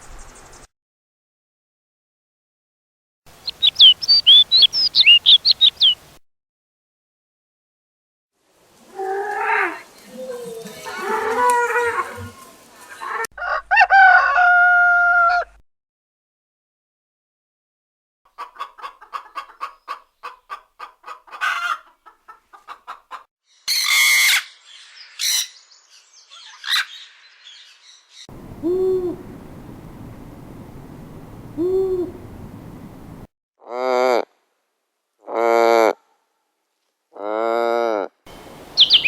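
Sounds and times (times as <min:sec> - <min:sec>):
hen clucking and squawking: 0:03.3 - 0:06.2, 0:18.3 - 0:23.2, 0:38.3 - 0:39.0
owl hooting: 0:03.4 - 0:06.1, 0:28.3 - 0:33.2, 0:38.4 - 0:39.0
rooster crowing: 0:13.3 - 0:15.6.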